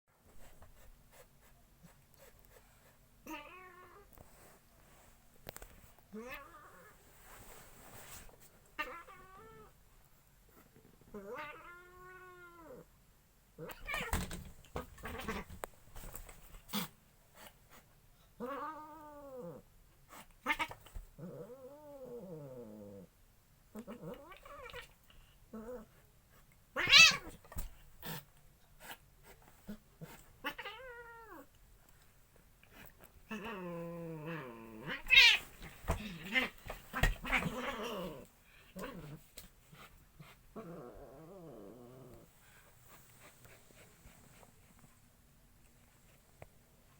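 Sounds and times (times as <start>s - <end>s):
cats hissing and spitting: 26.3s - 30.9s, 32.6s - 44.8s
cats yowling: 26.8s - 27.4s, 33.3s - 38.2s.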